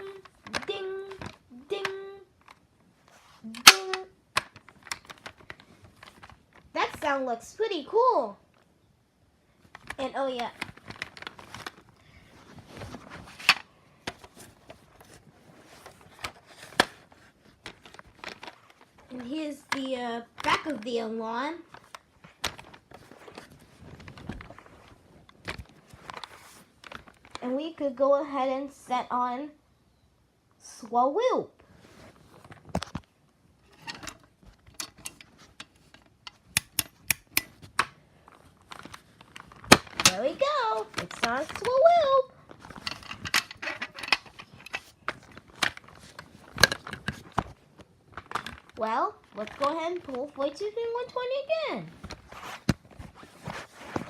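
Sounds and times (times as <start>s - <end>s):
handling clicks and knocks: 33.7s - 38.0s, 42.5s - 50.4s
sharp clicks of alarm handling: 36.5s - 37.9s.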